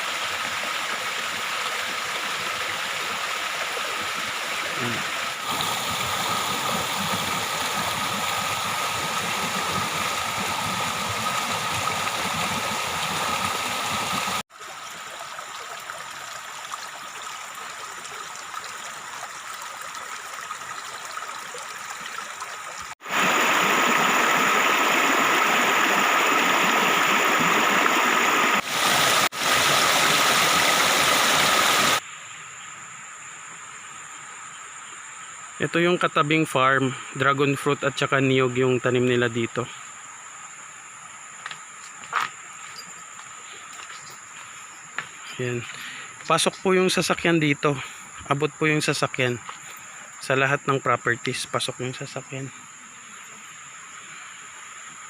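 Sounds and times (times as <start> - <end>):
rushing outdoor noise: 23.0 - 32.0.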